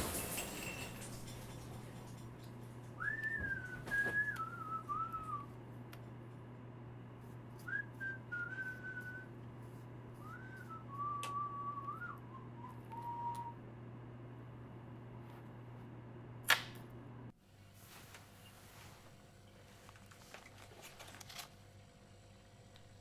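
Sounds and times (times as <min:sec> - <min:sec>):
person whistling a tune: 0:03.0 - 0:05.5, 0:07.6 - 0:09.3, 0:10.2 - 0:13.6.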